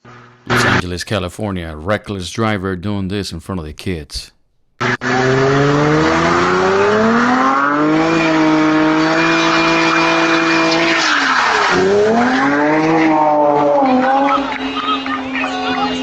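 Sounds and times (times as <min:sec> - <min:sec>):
car engine revving: 0:00.0 - 0:00.9, 0:04.8 - 0:16.0.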